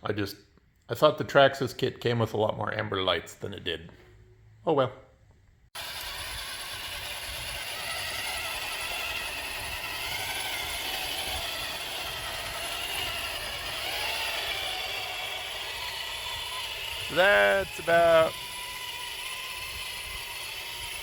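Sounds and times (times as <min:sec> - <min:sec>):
toy truck electric motors whining: 0:05.8 - 0:21.0.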